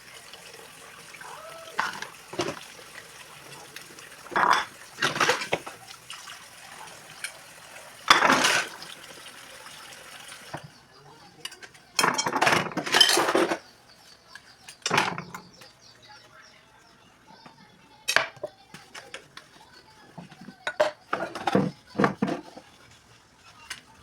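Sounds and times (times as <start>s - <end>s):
water splashing in sink: 0.0s - 10.7s
dishes and utensils clinking: 0.1s - 15.9s, 17.3s - 22.9s.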